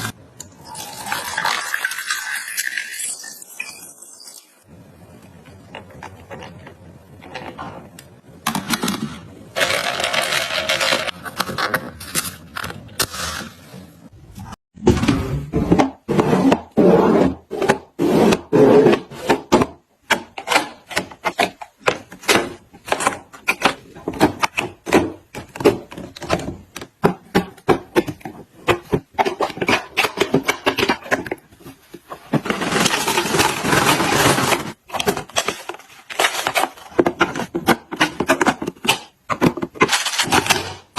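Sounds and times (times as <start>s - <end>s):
objects being handled: 15.5s - 40.9s.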